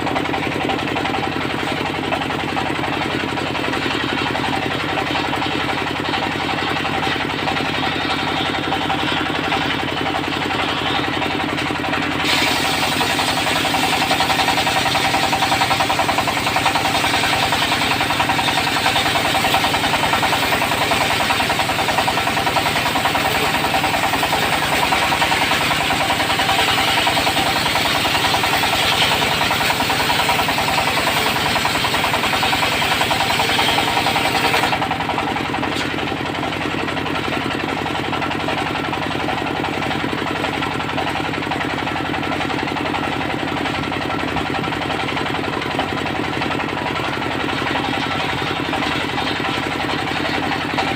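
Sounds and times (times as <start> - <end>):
saw blade cutting wood: 0.0 - 42.0, 42.6 - 50.9
diesel engine knocking: 0.0 - 50.9.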